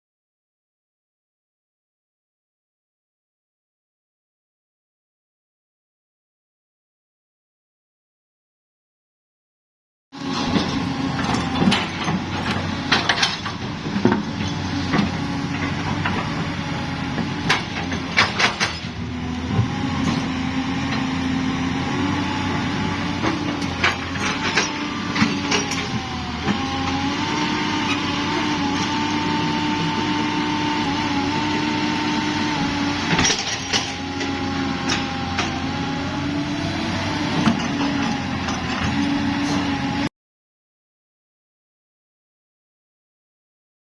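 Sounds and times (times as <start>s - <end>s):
excavator engine and hydraulic drone: 10.2s - 40.1s.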